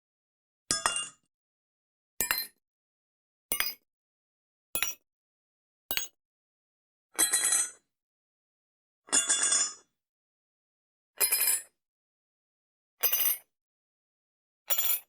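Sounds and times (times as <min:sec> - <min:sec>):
coins clinking into a bowl: 0:13.0 - 0:13.4, 0:14.7 - 0:15.0.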